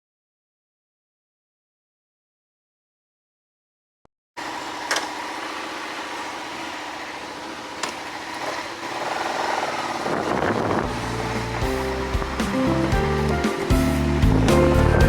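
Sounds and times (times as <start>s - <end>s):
motorcycle engine running: 4.4s - 15.0s.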